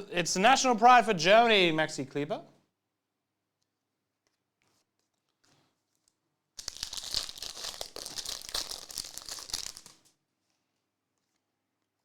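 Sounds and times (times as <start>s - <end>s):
card pack wrapper tearing: 6.6s - 10.1s.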